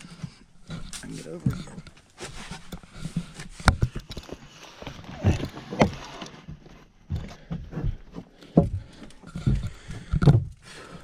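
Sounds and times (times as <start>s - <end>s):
footsteps knocking and thumping: 4.8s - 10.6s.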